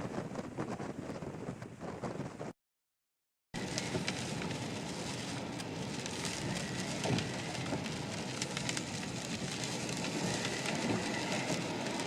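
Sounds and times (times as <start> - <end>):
rain pattering on vehicle roof: 3.6 - 12.0.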